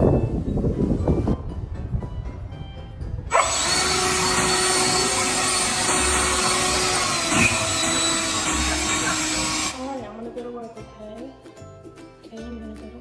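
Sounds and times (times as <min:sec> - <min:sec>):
small motor whirring: 0:03.3 - 0:10.0.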